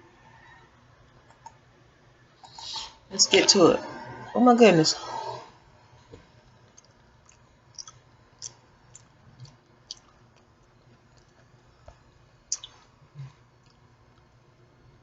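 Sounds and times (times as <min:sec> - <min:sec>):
quiet chewing: 0:06.4 - 0:14.3.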